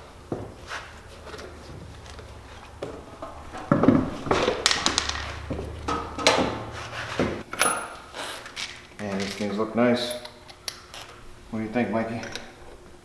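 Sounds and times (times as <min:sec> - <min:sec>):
low hum: 0:00.0 - 0:07.4
metal tools clanking: 0:00.3 - 0:11.2.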